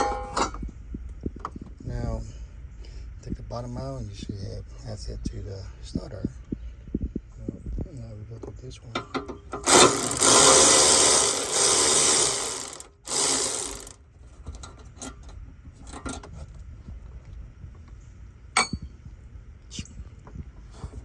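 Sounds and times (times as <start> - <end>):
power tool running a bolt: 9.6 - 14.0.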